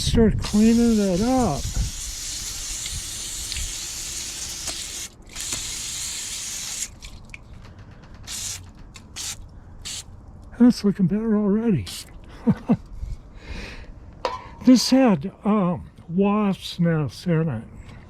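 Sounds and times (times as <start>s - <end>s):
spray can hissing: 0.5s - 7.0s, 8.3s - 10.1s.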